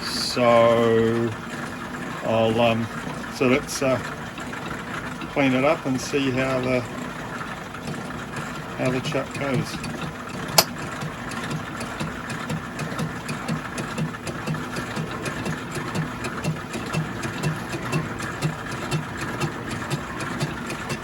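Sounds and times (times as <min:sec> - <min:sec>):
metal lathe cutting steel: 0:00.0 - 0:21.0.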